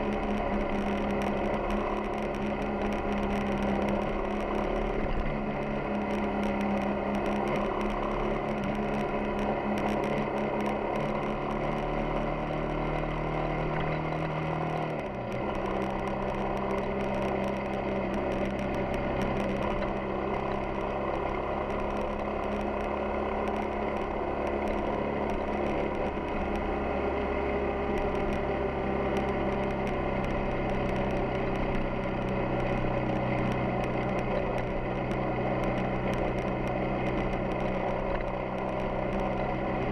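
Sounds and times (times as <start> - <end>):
motorcycle engine running: 0.0 - 39.9
wind and road noise: 0.0 - 39.9.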